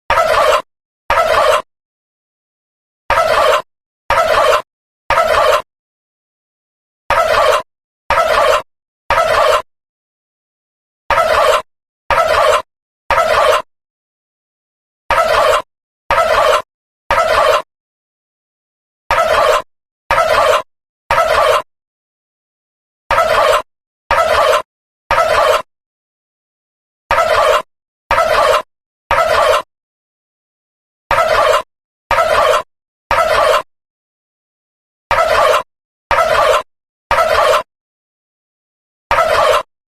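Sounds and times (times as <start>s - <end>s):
turkey gobbles: 0.1s - 1.7s, 3.1s - 5.7s, 7.1s - 9.7s, 11.1s - 13.7s, 15.1s - 17.7s, 19.1s - 21.7s, 23.1s - 25.7s, 27.1s - 29.7s, 31.1s - 33.7s, 35.1s - 37.7s, 39.1s - 39.7s.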